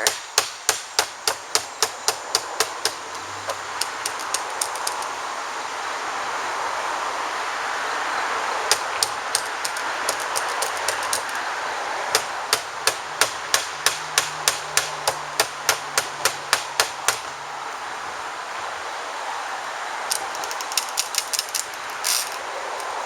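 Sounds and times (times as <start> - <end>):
hammer blows on vent: 0.0 - 5.1, 12.1 - 17.4
background hiss: 0.0 - 23.0.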